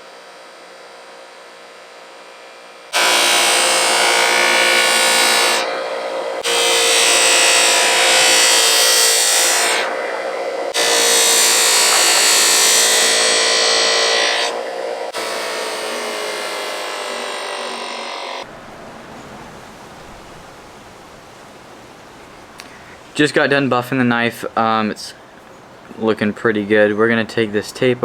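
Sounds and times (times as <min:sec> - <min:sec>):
buffing wheel whining: 0:00.0 - 0:19.9.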